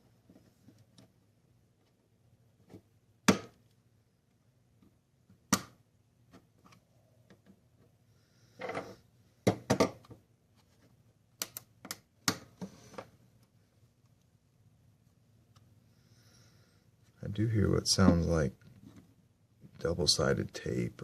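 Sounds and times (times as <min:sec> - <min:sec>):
plastic clicks and snaps: 0:11.4 - 0:12.5.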